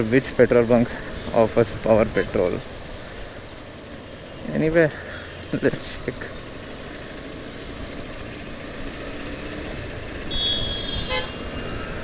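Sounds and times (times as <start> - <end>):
motorcycle engine rumble: 0.0 - 12.0
vehicle horn: 10.2 - 11.8.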